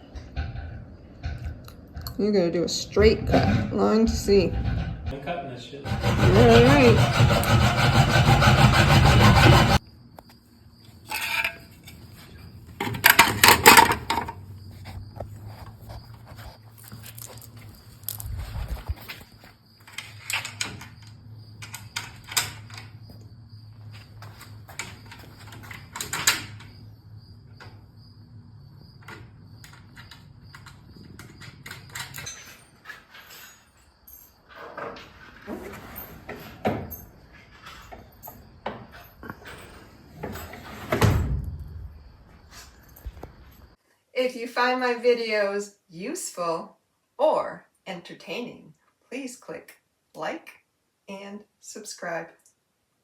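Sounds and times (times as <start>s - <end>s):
saw cutting wood: 5.9s - 9.8s
clatter of sharp knocks: 12.8s - 14.4s.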